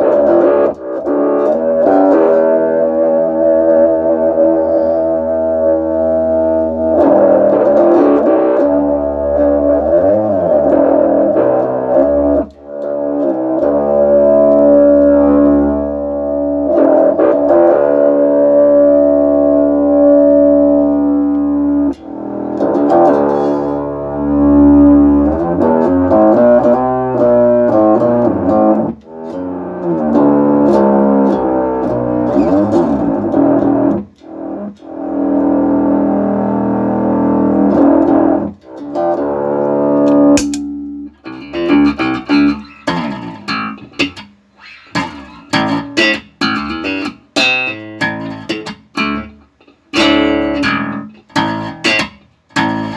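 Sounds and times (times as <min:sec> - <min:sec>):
synth tones from plucked bass: 0:00.0 - 0:44.0, 0:50.0 - 0:52.0.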